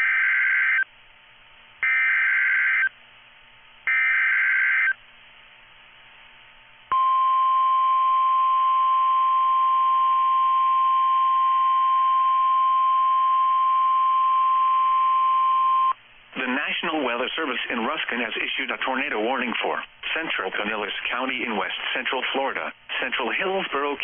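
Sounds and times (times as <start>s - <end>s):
steady single-pitch alarm tone: 0.0s - 0.9s, 1.8s - 2.9s, 3.8s - 5.0s, 6.9s - 16.0s.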